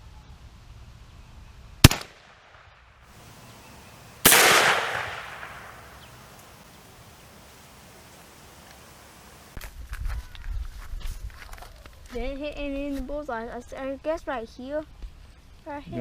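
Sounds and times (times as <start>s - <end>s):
shotgun shots echoing: 1.9s - 2.6s, 3.2s - 9.6s.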